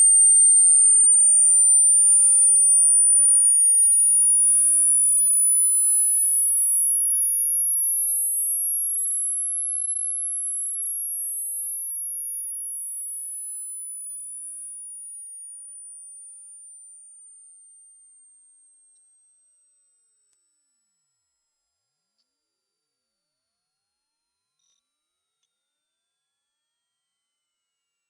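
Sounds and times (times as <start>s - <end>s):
high test tone rising in pitch: 0.0s - 10.0s.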